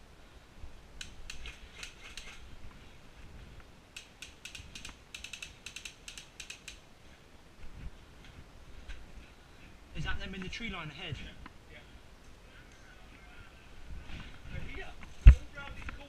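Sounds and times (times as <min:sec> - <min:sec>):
sharp mechanical clicks: 0:01.0 - 0:02.5, 0:03.9 - 0:06.8.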